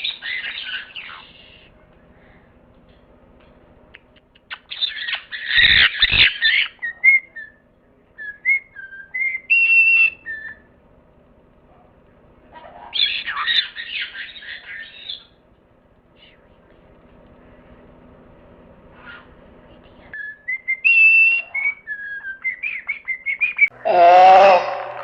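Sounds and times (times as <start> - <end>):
bird squawking: 0.0 - 1.7, 4.0 - 7.6, 8.2 - 10.7, 12.5 - 15.4, 18.9 - 19.4, 20.2 - 25.0.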